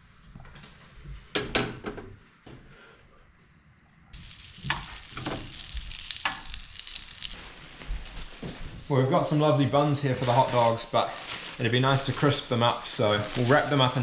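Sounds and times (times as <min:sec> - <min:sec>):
frying pan sizzling: 0:04.2 - 0:14.0.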